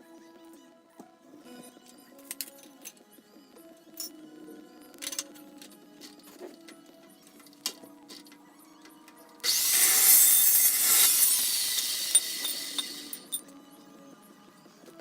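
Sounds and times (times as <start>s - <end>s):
cold cut saw cutting steel tubing: 9.4s - 13.3s.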